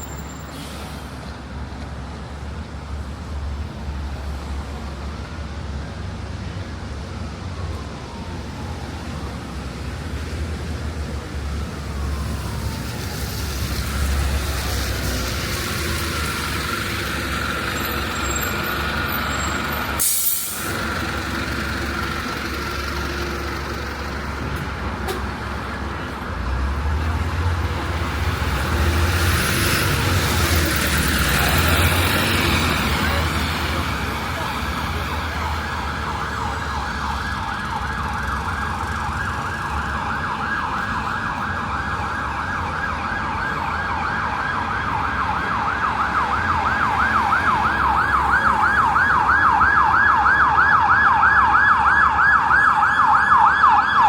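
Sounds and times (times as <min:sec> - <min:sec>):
street traffic: 0:00.0 - 0:54.0
vehicle rumbling past: 0:20.8 - 0:52.9.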